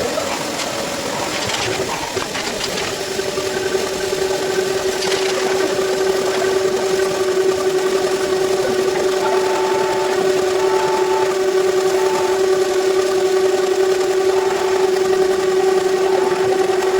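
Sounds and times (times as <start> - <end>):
metal lathe humming: 0.0 - 16.9
scraping clicks: 0.2 - 3.5.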